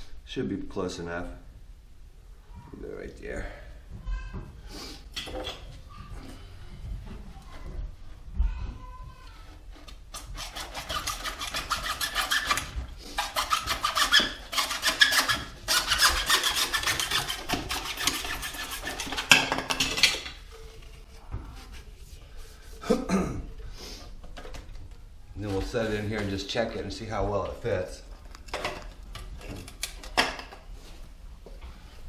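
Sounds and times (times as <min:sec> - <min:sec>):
hand saw cutting pipe: 0:10.1 - 0:19.4.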